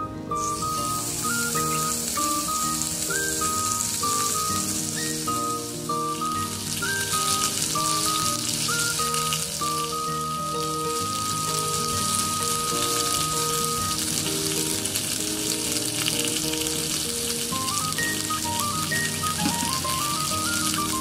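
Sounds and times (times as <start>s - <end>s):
background music: 0.0s - 21.0s
meat sizzling on a grill: 0.3s - 21.0s.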